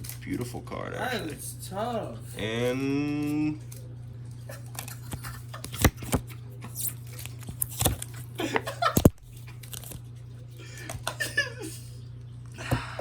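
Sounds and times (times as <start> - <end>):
foil wrapper crinkling and tearing: 4.5 - 8.4, 9.0 - 10.2.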